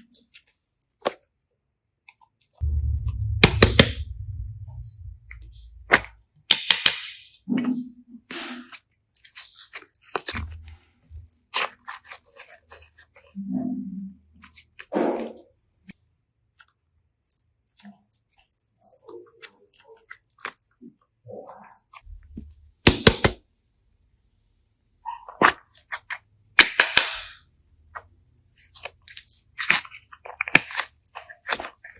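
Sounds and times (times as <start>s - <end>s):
hands squishing slime and clay: 8.3s - 23.4s, 25.1s - 31.9s.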